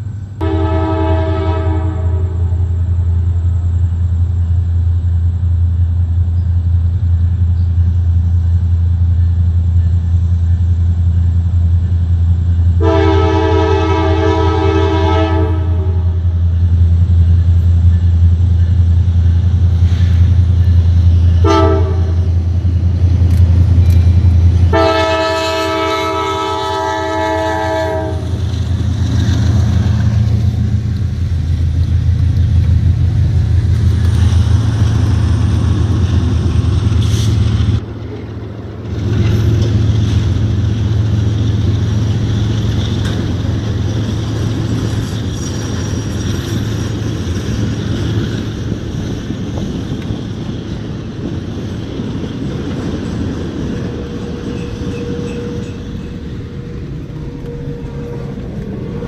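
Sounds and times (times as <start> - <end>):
diesel locomotive rumble: 0.0 - 59.0
locomotive air horn: 0.4 - 2.8, 12.8 - 16.3, 21.4 - 22.4, 24.7 - 28.4, 53.7 - 59.0.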